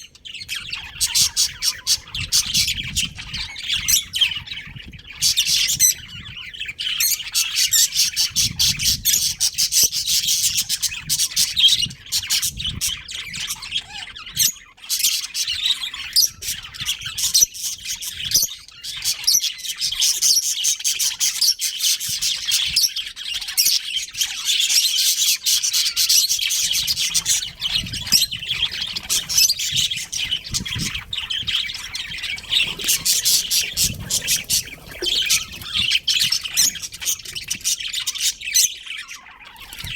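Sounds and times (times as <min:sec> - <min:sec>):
budgerigars chattering and chirping: 0:00.0 - 0:39.9.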